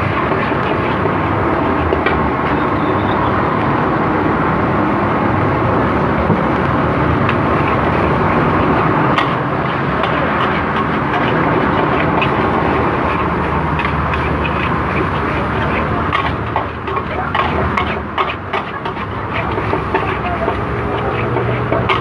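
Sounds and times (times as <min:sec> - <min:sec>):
gas burner roaring: 0:00.0 - 0:22.0
spatula clinking on wok: 0:07.2 - 0:22.0.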